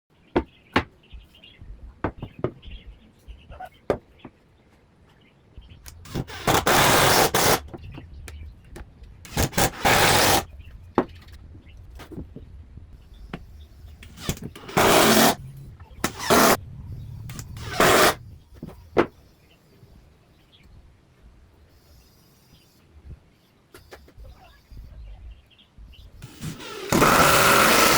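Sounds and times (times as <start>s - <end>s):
low steady hum: 10.4s - 21.7s.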